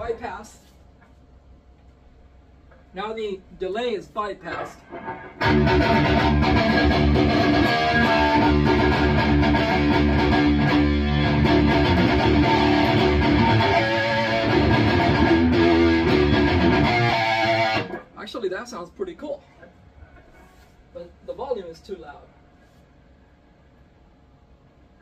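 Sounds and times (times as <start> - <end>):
distorted electric guitar riff: 4.5 - 18.1.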